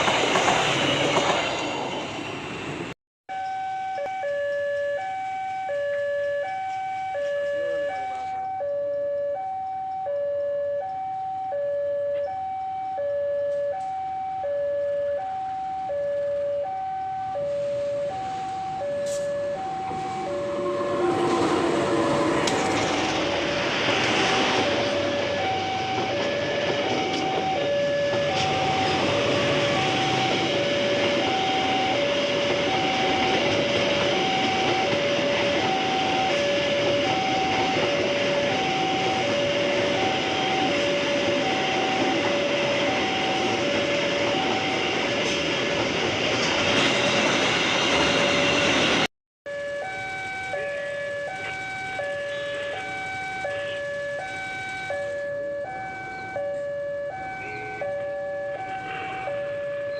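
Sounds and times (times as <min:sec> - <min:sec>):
passing train rumble: 0:00.0 - 0:03.0, 0:16.2 - 0:49.1
two-note crossing alarm: 0:03.3 - 0:22.6, 0:24.6 - 0:45.1, 0:49.5 - 0:59.9
higher alarm tones: 0:03.3 - 0:59.9.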